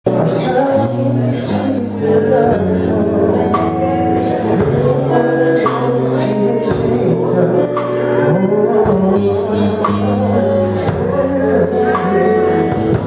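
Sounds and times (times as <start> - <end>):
worship band playing: 0.1 - 13.0.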